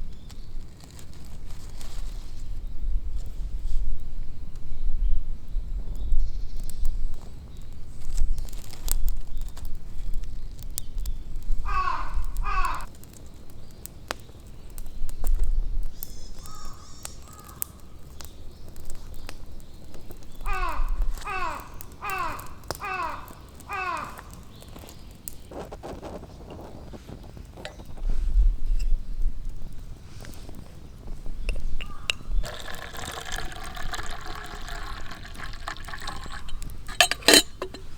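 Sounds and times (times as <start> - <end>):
crow cawing: 11.7 - 12.9, 16.4 - 17.7, 20.4 - 24.4
soft rustling: 24.9 - 32.4
sharp clicks and rustles: 34.0 - 37.9.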